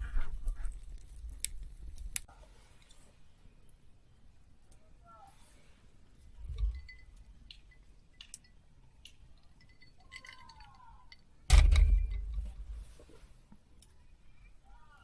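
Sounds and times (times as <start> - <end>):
small hard items clinking: 6.6 - 12.6.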